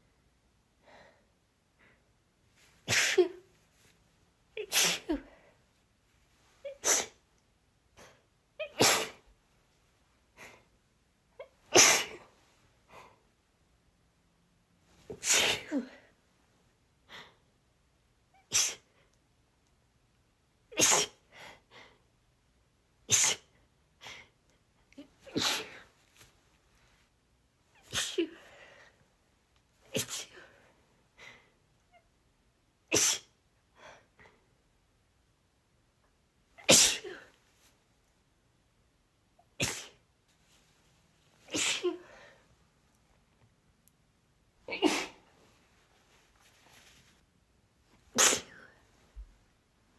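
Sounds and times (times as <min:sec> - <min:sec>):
woman sneezing: 0:02.8 - 0:03.5, 0:04.6 - 0:05.3, 0:06.7 - 0:07.2, 0:08.6 - 0:09.3, 0:11.4 - 0:12.3, 0:15.1 - 0:16.0, 0:18.5 - 0:18.9, 0:20.8 - 0:21.2, 0:23.1 - 0:23.5, 0:25.2 - 0:25.9, 0:27.8 - 0:28.5, 0:29.9 - 0:30.4, 0:32.9 - 0:33.4, 0:36.6 - 0:37.4, 0:39.6 - 0:40.0, 0:41.4 - 0:42.3, 0:44.7 - 0:45.3, 0:48.1 - 0:48.8.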